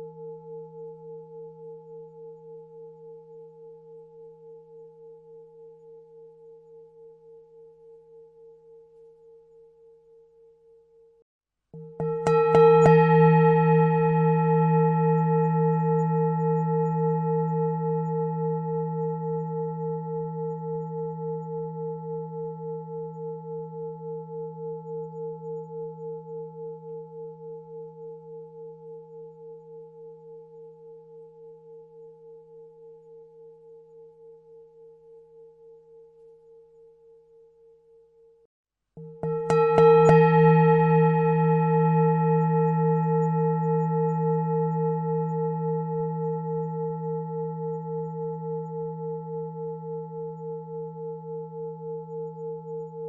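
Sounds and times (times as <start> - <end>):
singing bowl ringing: 0.0 - 11.2, 11.8 - 53.0.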